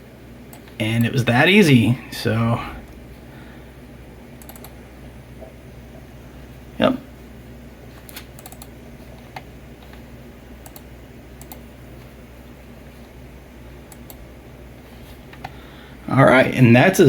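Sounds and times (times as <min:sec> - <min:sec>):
low hum: 0:00.0 - 0:17.0
keyboard keys clicking: 0:04.4 - 0:04.8, 0:08.1 - 0:08.7, 0:10.6 - 0:11.7.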